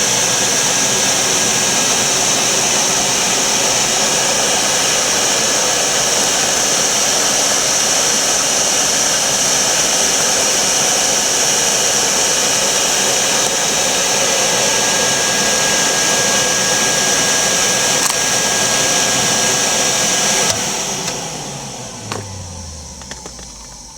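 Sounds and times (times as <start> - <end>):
vacuum cleaner running: 0.0 - 23.9
click: 18.0 - 18.7, 20.4 - 21.4, 22.0 - 23.9.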